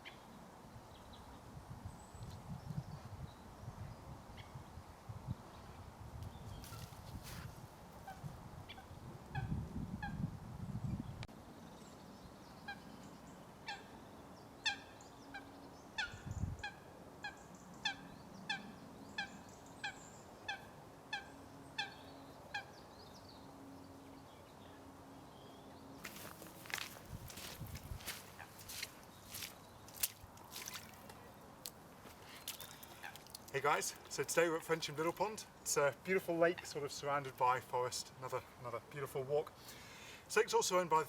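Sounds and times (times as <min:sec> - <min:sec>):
wind rumbling on microphone: 0:00.7 - 0:11.3, 0:16.0 - 0:16.7, 0:26.0 - 0:31.3.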